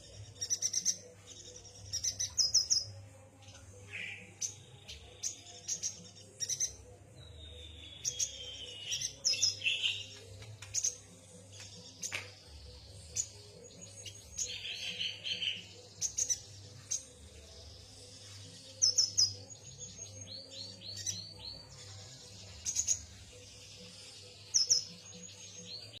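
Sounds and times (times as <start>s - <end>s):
bird chirping: 0.0s - 26.0s.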